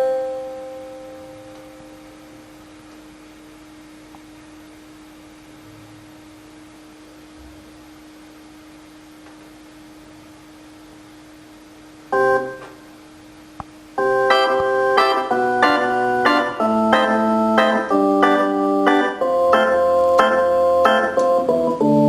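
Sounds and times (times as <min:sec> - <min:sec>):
keyboard chords: 0:00.0 - 0:03.0, 0:12.1 - 0:12.9, 0:14.0 - 0:22.0
faint steady hum-like tone: 0:00.0 - 0:22.0.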